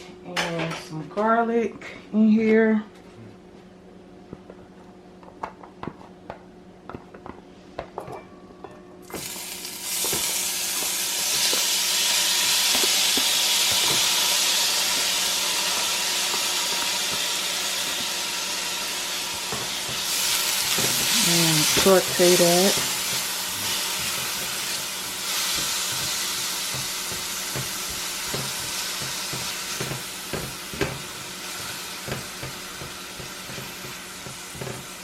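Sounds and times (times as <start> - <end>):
onion and garlic sizzling in oil: 9.0 - 35.0.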